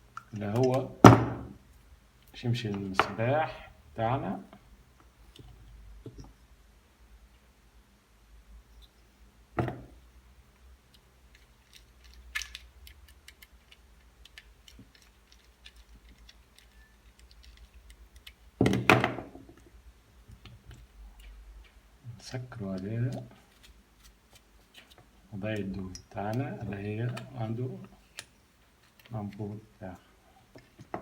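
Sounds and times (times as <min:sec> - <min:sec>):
small clicks and taps: 0:10.9 - 0:18.4.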